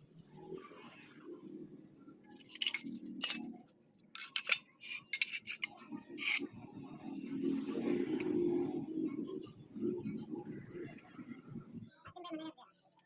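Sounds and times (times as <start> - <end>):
metal pieces clinking: 2.4 - 3.5, 4.2 - 6.4.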